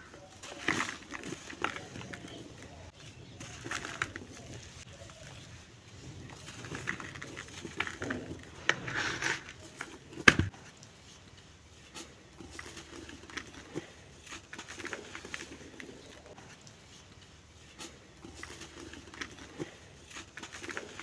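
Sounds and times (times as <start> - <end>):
dry lumps crumbling and crackling: 0.1 - 10.6.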